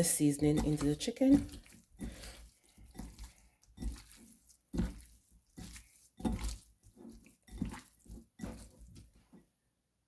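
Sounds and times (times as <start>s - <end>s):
hands squelching raw chicken: 0.0s - 9.4s.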